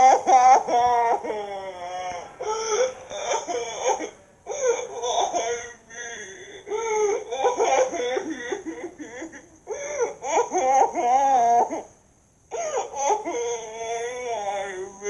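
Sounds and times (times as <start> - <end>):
cartoon voice wailing and sobbing: 12.8 - 15.0.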